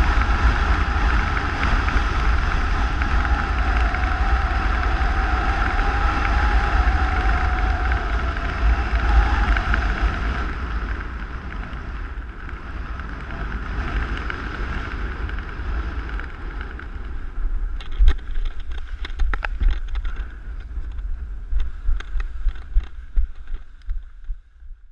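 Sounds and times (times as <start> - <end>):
wind buffeting microphone: 0.0 - 24.9.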